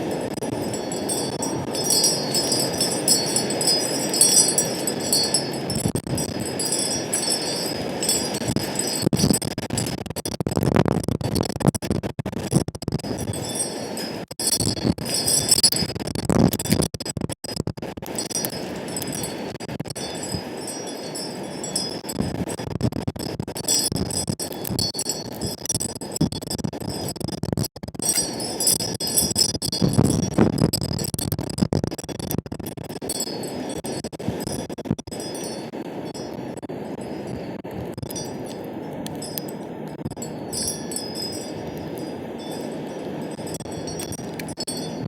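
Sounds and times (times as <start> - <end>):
metal wind chimes tinkling: 0.0 - 9.4, 13.1 - 15.9, 18.1 - 22.5, 23.6 - 25.6, 28.0 - 30.4, 33.0 - 34.6, 35.2 - 45.0
wind rushing on microphone: 0.0 - 17.3, 17.9 - 45.0.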